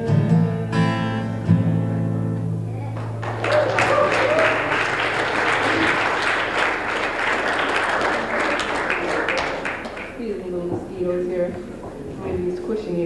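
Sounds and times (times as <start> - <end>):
audience applauding: 2.8 - 10.2.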